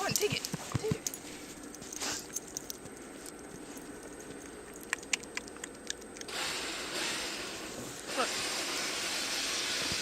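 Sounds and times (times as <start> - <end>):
sharp clicks: 4.7 - 6.3.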